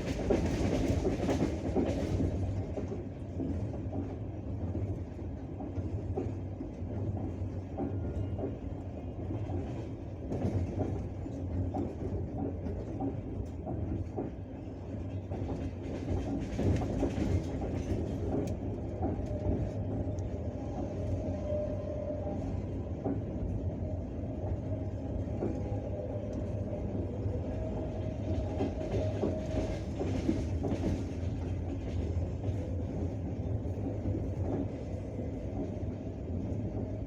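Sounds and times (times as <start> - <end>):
train rumbling: 0.0 - 37.0
singing tone from rails: 19.2 - 23.3.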